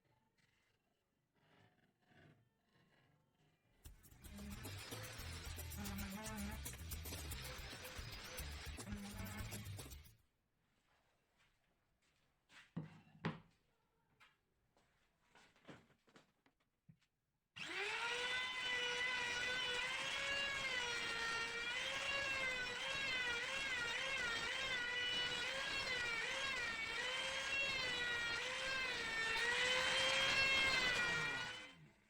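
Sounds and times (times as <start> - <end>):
power tool motor whining: 3.9 - 10.1, 17.6 - 31.9.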